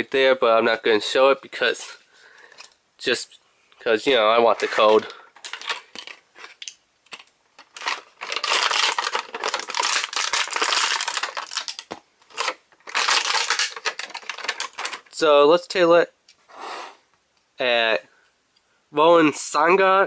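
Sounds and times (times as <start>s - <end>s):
packaging crinkling and rustling: 4.4s - 15.2s.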